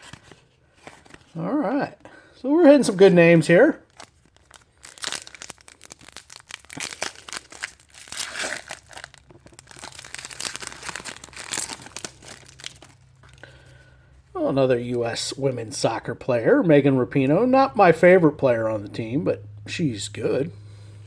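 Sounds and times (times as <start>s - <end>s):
foil wrapper crinkling and tearing: 3.8s - 13.7s.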